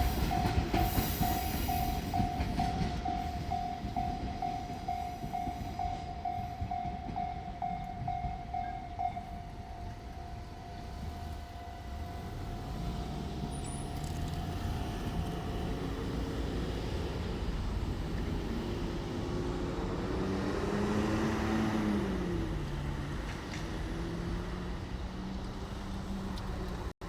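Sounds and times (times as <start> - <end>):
vehicle engines running: 11.5 - 27.0.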